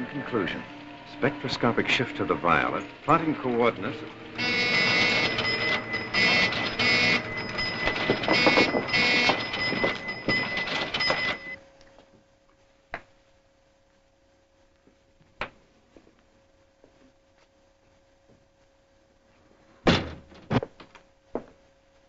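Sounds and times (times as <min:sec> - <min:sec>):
steady high electronic tone: 0:00.0 - 0:11.6
mechanical chattering: 0:04.4 - 0:11.6.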